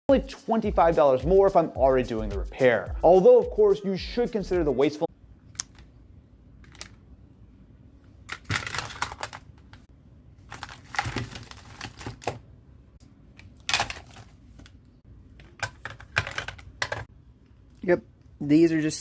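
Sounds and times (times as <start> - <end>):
phone parts clicking and clattering: 15.4 - 17.1.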